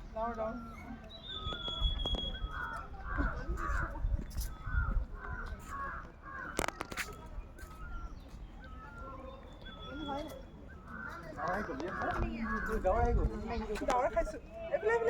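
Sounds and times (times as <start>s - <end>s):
crows cawing: 4.7s - 6.8s, 11.0s - 13.2s.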